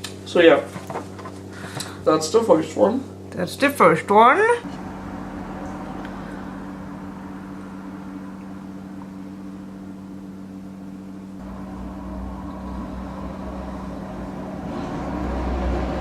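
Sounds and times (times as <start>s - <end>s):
mechanical hum with low tones: 0.0s - 16.0s
deep rumble: 4.6s - 16.0s.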